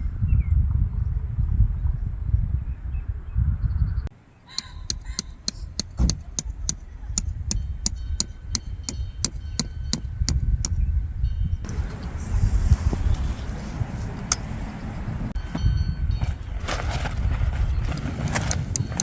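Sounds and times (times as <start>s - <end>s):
wind rumbling on microphone: 0.0s - 4.1s, 4.8s - 19.0s
metallic hammer strikes: 4.6s - 10.8s.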